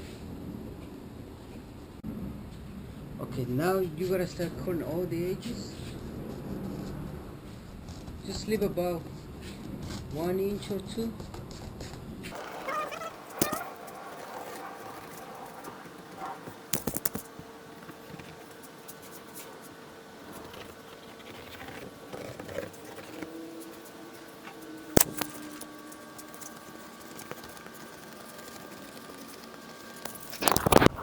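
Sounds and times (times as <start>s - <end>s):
steady faint hum: 12.2s - 31.0s
sharp clicks: 12.4s - 19.2s
scratching and handling of fabric: 12.4s - 31.0s.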